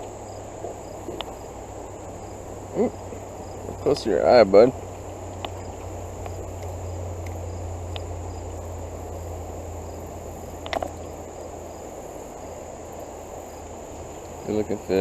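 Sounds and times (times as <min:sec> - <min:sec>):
faint ticks: 0:00.0 - 0:01.9, 0:04.8 - 0:08.6, 0:10.6 - 0:11.0, 0:14.2 - 0:14.5
creek water rushing: 0:00.0 - 0:15.0
high-pitched insect chorus: 0:00.0 - 0:15.0.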